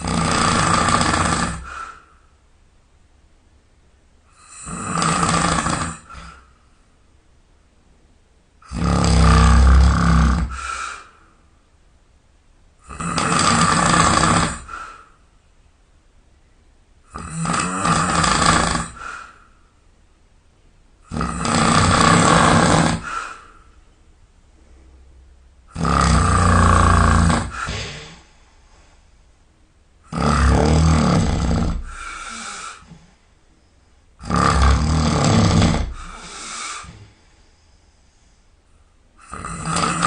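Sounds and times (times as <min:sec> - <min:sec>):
man snoring loudly: 0:00.0 - 0:01.8, 0:04.4 - 0:06.4, 0:08.6 - 0:10.9, 0:12.8 - 0:14.9, 0:17.1 - 0:19.2, 0:21.0 - 0:23.3, 0:25.7 - 0:28.2, 0:30.1 - 0:32.9, 0:34.2 - 0:37.0, 0:39.2 - 0:40.0.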